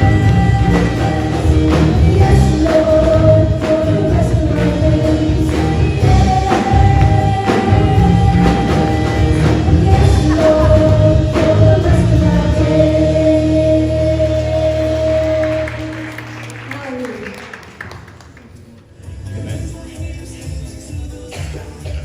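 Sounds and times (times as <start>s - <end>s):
voices singing held notes: 0.0s - 16.2s
band with bass and drums: 0.0s - 16.8s.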